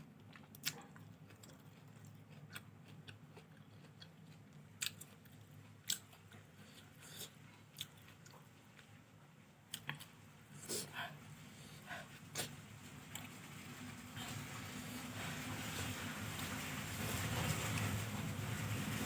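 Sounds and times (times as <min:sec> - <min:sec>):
person chewing food: 0:00.0 - 0:09.1, 0:09.7 - 0:13.4.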